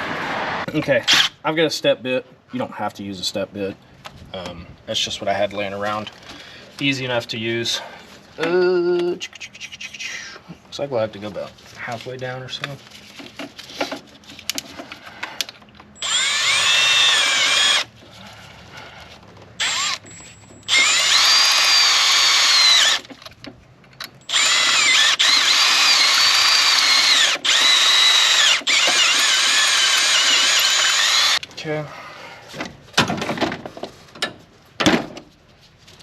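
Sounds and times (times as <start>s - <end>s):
power drill whining: 16.0s - 17.9s, 19.6s - 23.1s, 24.2s - 31.4s.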